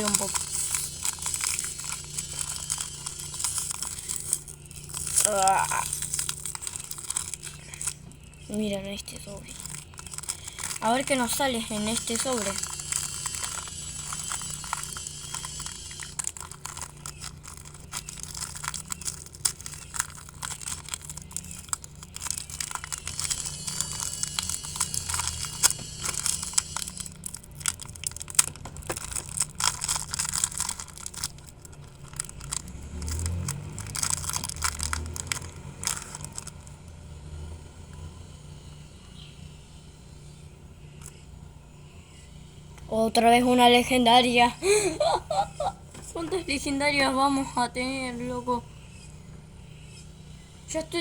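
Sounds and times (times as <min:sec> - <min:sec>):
foil wrapper crinkling and tearing: 0:00.0 - 0:36.8.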